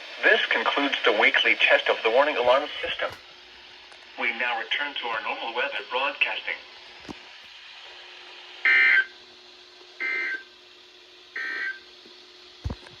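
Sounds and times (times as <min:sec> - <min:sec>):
radio hiss: 0:00.0 - 0:03.2, 0:04.0 - 0:07.3
faint steady hum: 0:00.1 - 0:13.0.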